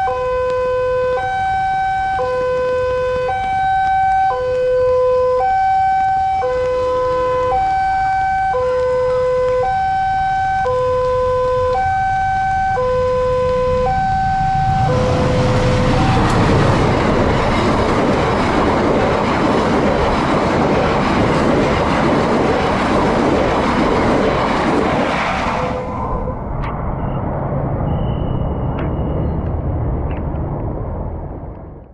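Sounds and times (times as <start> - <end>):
two-tone crossing alarm: 0.0 - 16.8
train passing rumble: 0.0 - 31.9.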